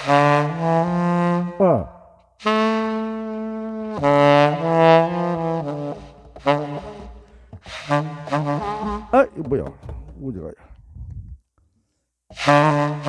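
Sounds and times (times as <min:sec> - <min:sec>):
soft saxophone notes: 0:02.4 - 0:09.7.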